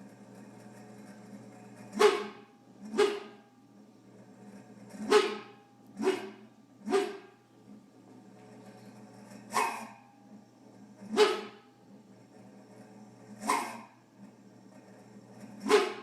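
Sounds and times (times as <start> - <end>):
freezer compressor hum: 0.0 - 16.0
compressor bark-like yelps: 2.0 - 3.4, 5.0 - 7.4, 9.5 - 10.0, 11.1 - 11.6, 13.4 - 14.0, 15.6 - 16.0.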